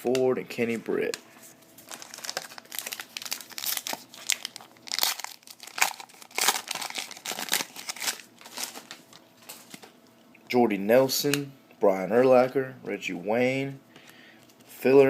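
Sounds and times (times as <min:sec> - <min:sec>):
plastic wrapper crinkling and tearing: 0:01.1 - 0:10.0.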